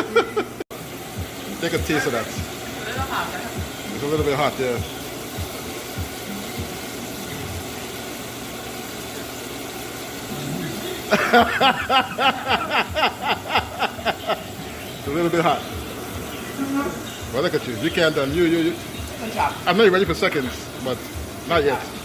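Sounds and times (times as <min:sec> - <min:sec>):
person laughing: 0:00.0 - 0:00.6, 0:10.7 - 0:14.6.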